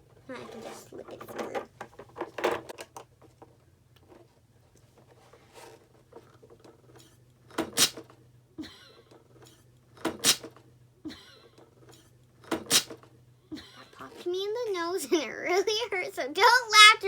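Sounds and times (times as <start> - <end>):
puffs of breath into balloon: 12.7 - 13.0.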